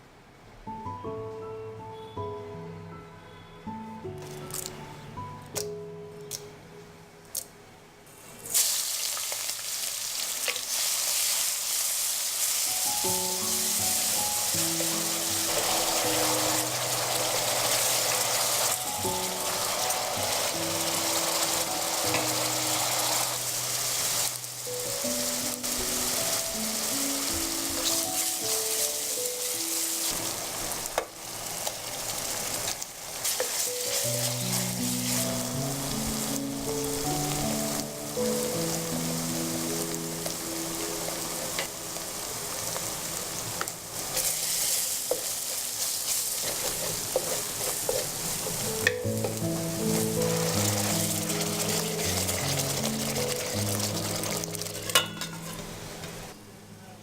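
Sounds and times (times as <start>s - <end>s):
background music: 0.7s - 7.0s, 12.6s - 31.0s, 33.3s - 42.3s, 48.5s - 56.9s
food sizzling in a pan: 8.4s - 56.3s
stirring in a pan: 30.8s - 35.5s, 44.0s - 55.7s.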